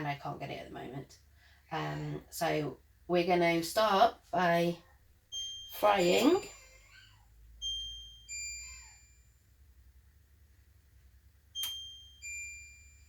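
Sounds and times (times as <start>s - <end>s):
short electronic beeps: 5.3s - 6.6s, 7.6s - 9.1s.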